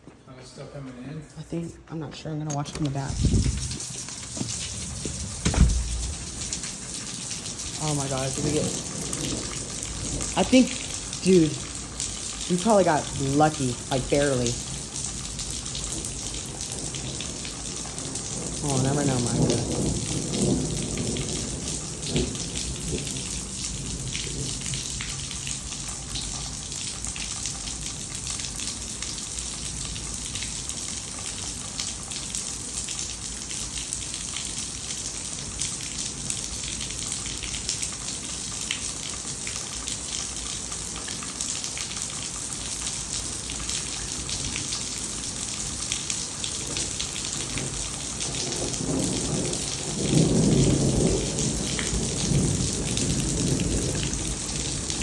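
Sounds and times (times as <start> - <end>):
heavy rain pouring: 2.6 - 55.0
low rumble of thunder: 3.1 - 26.4, 46.5 - 55.0.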